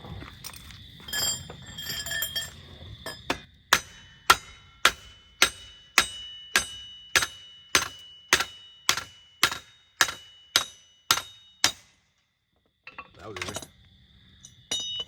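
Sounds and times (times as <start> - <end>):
hammer striking steel: 3.1 - 12.0.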